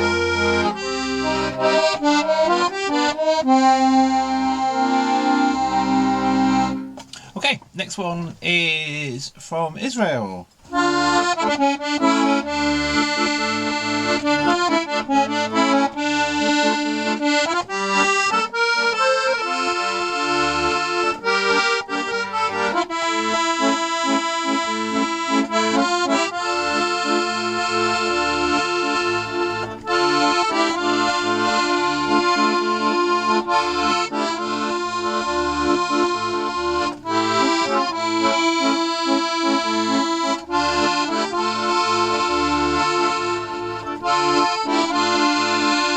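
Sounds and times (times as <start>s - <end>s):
accordion playing folk tune: 0.0s - 8.3s, 10.6s - 45.9s.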